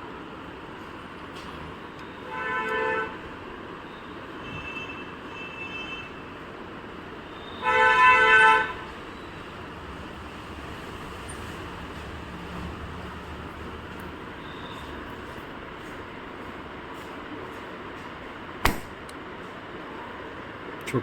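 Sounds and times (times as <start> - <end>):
background traffic noise: 0.0 - 21.0
vehicle horns honking: 2.2 - 3.2, 7.5 - 8.9.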